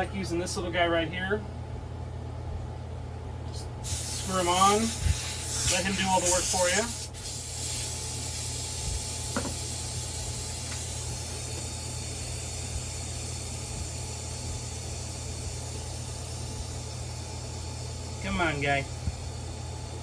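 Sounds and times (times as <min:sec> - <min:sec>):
air hissing out of tire: 0:03.8 - 0:13.2.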